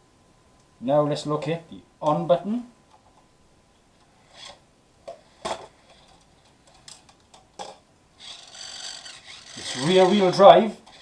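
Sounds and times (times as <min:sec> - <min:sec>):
small electric motor whirring: 0:04.3 - 0:04.6, 0:08.2 - 0:11.0.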